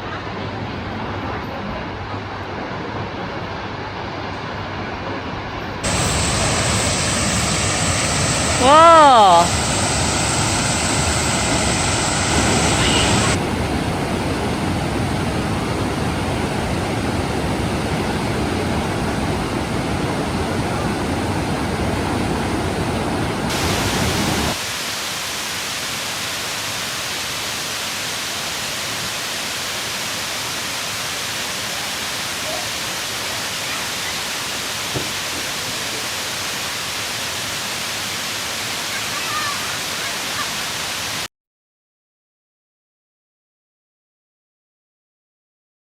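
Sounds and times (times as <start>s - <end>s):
waterfall roaring: 5.8s - 41.3s.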